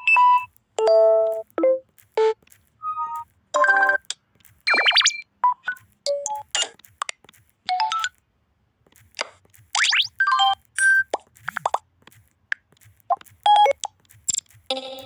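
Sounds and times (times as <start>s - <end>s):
electronic chimes and beeps: 0.0s - 6.6s, 9.8s - 11.8s, 13.5s - 15.0s.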